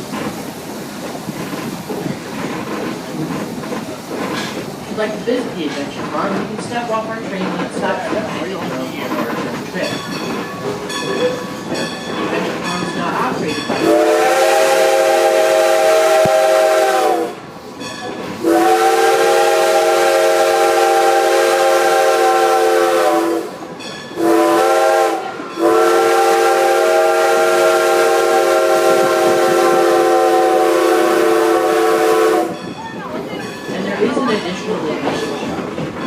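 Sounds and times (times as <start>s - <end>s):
steam locomotive chime whistle: 9.8s - 34.4s.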